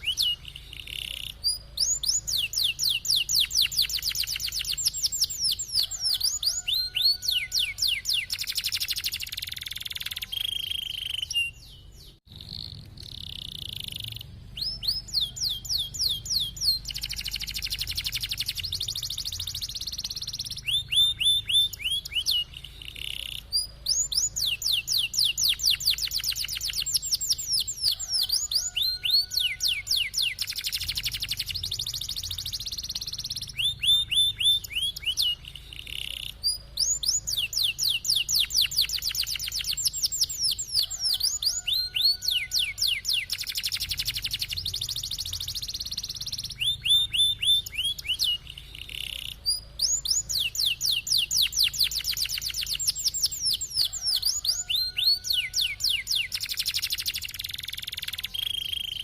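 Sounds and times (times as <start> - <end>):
canary singing trills: 0.0 - 59.0.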